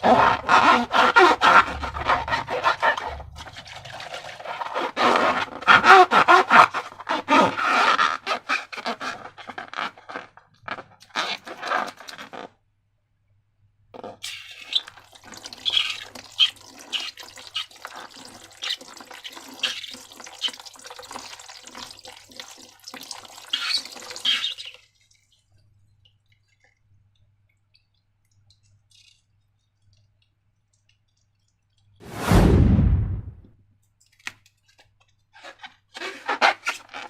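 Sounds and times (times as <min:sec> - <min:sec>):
loud thud: 0:32.0 - 0:33.4.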